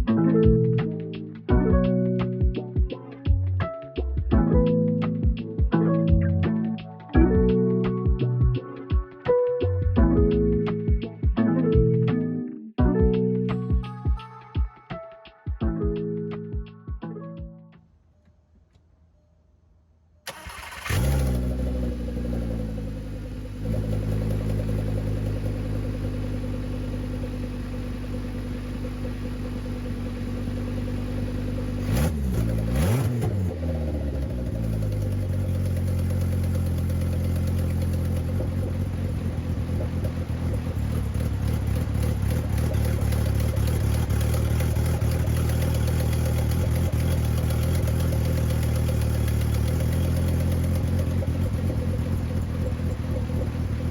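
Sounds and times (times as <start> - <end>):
car engine starting and idling: 20.2 - 53.9.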